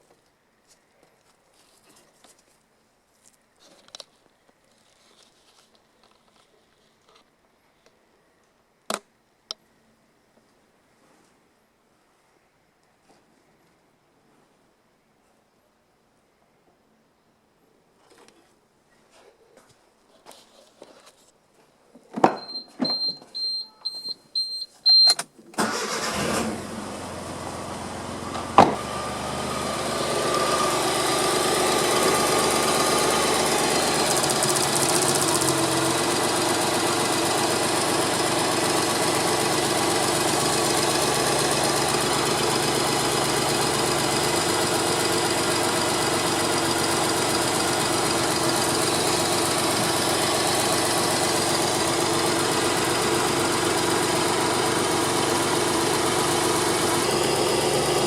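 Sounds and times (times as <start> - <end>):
car engine idling: 25.6 - 58.0.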